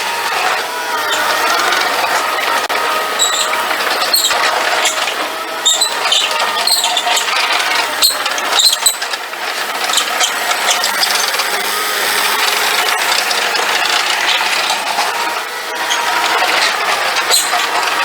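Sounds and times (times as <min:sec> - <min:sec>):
compact track loader running: 0:00.0 - 0:18.0
metallic clanks and rattles: 0:00.3 - 0:11.5, 0:12.4 - 0:18.0.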